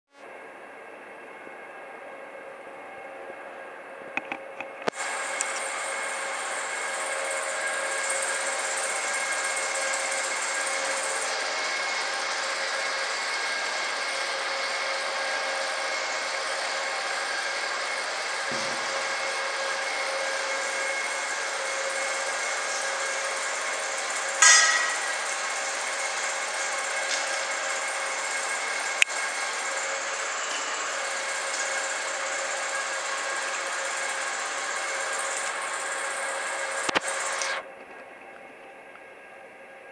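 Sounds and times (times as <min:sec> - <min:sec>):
roll forming machine whining: 0:01.0 - 0:39.9
loud metallic clang: 0:24.4 - 0:25.3.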